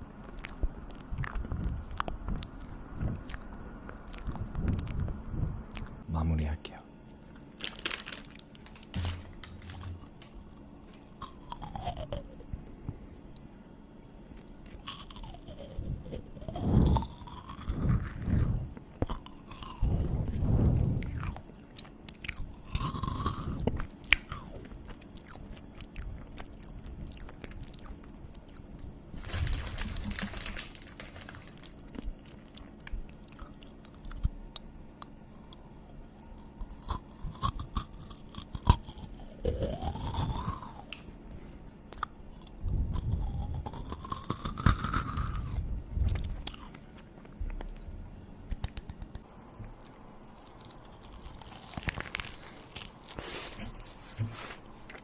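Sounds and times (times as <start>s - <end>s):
person chewing and crunching food: 0.0s - 6.1s, 7.1s - 13.5s, 14.3s - 55.0s
wet mouth clicks: 5.7s - 6.0s.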